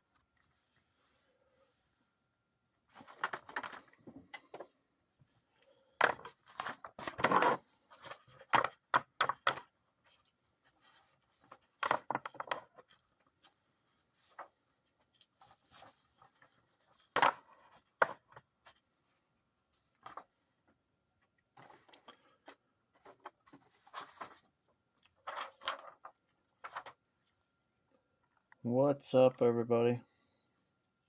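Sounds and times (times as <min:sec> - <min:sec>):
rustling: 0:21.6 - 0:27.4.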